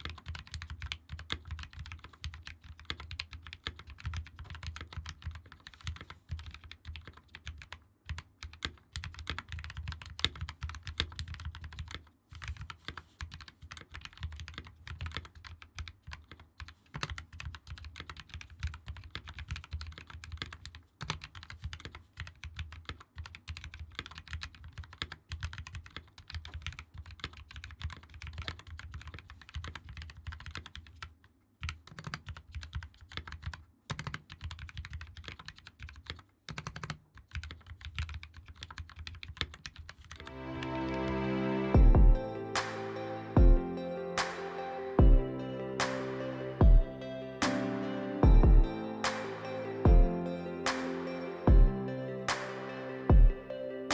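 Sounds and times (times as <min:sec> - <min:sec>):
mechanical keyboard typing: 0:00.0 - 0:40.2.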